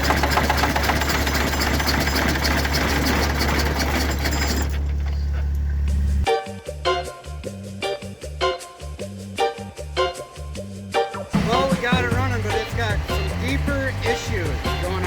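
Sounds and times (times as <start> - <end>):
diesel tractor engine clattering: 0.0 - 6.1, 11.4 - 15.0.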